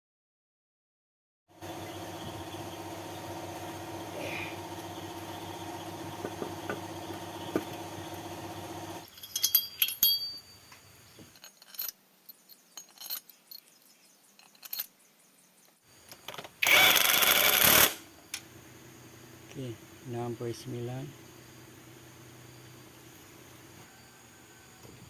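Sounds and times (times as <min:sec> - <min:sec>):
machine hum: 0:01.5 - 0:09.1
tools clinking on a workbench: 0:09.0 - 0:15.0.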